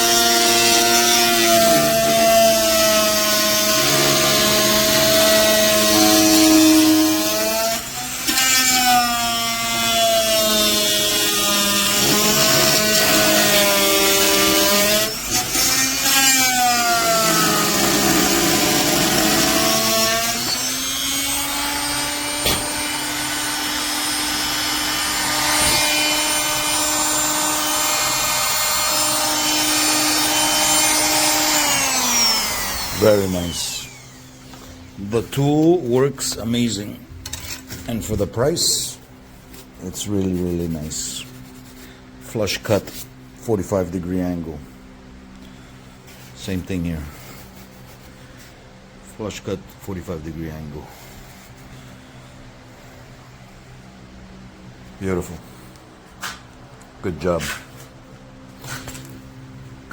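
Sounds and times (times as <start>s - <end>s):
oscillating multi-tool sawing wood: 0.0s - 34.4s.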